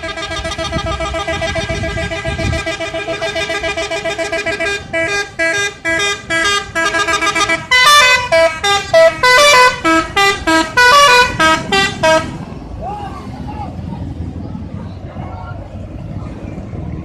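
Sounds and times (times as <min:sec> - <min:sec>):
bus musical horn melody: 0:00.0 - 0:12.4.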